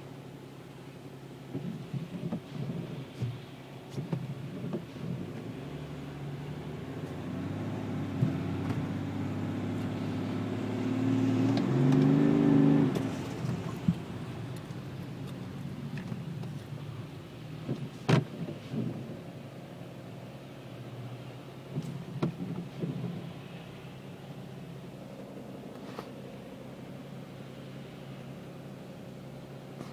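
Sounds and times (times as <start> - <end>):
engine rattling knocks: 1.4 - 10.5, 21.6 - 23.6
diesel engine idling: 5.6 - 17.6.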